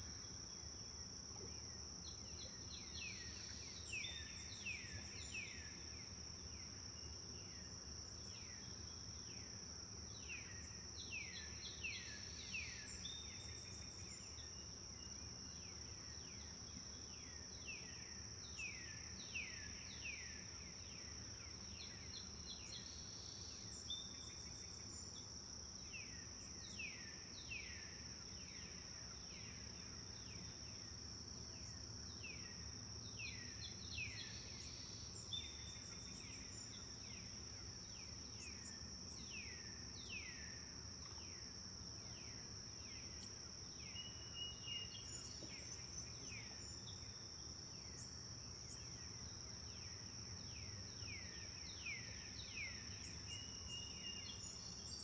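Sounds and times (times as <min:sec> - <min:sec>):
forest birds chirping: 0:10.1 - 0:55.0.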